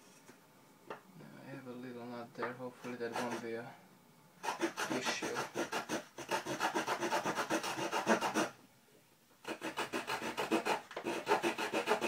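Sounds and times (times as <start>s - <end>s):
small saw cutting soft wood: 3.0s - 3.4s, 4.4s - 8.5s, 9.4s - 12.0s.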